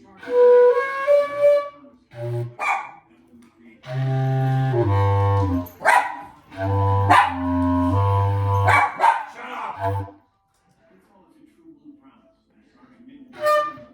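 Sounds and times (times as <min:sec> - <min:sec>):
wind instrument low notes: 0:00.0 - 0:02.6, 0:03.8 - 0:10.2, 0:13.4 - 0:13.9
dog barking: 0:02.5 - 0:03.1, 0:05.6 - 0:06.4, 0:07.0 - 0:07.9, 0:08.5 - 0:10.1.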